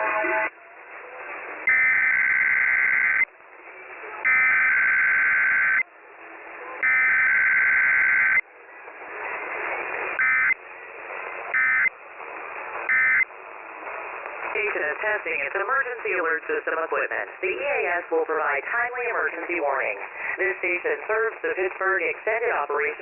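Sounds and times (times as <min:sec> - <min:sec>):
harsh two-tone data warble: 0:01.7 - 0:03.3, 0:04.2 - 0:05.8, 0:06.8 - 0:08.4, 0:10.2 - 0:10.6, 0:11.5 - 0:11.9, 0:12.9 - 0:13.2.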